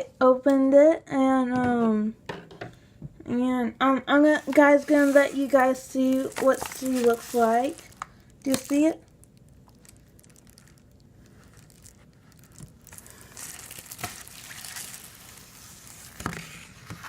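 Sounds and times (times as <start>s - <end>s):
packaging crinkling and rustling: 4.2s - 17.0s.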